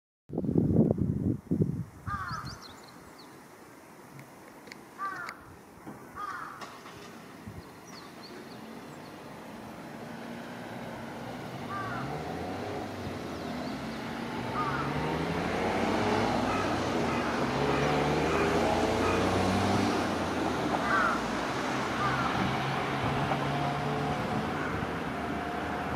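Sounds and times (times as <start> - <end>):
crow calling: 2.1 - 2.8, 5.0 - 5.4, 6.2 - 6.8, 11.7 - 12.2, 14.5 - 15.1, 16.4 - 19.5, 20.8 - 21.3, 22.0 - 22.4, 24.4 - 24.9
vehicle engine revving: 9.5 - 25.9.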